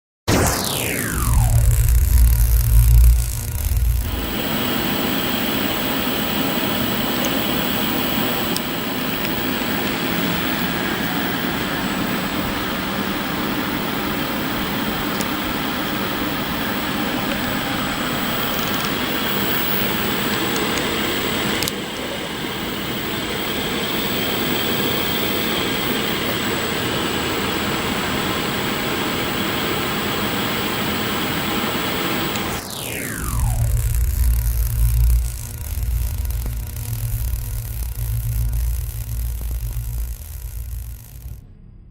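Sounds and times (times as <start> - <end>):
faint high whine: 0.3 - 41.9
servo motor running: 1.0 - 13.3, 33.2 - 41.4.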